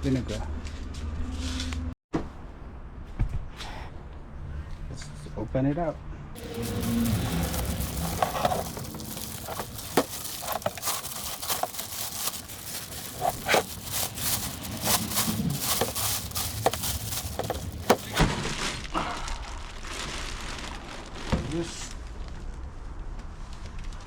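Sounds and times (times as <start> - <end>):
plastic packaging crinkling: 6.4 - 18.2.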